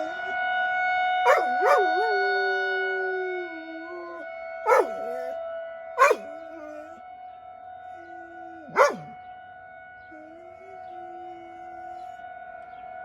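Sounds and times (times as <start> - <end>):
warning siren steady tone: 0.0 - 13.0
dog barking: 1.3 - 2.3, 3.9 - 5.3, 6.0 - 6.9, 8.5 - 9.2
low howling: 1.3 - 5.4, 6.0 - 7.0, 7.9 - 9.2, 10.1 - 12.2.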